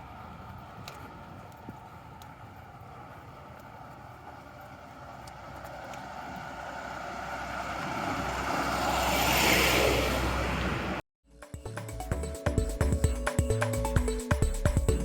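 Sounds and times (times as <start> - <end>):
vehicle passing: 0.0 - 11.0.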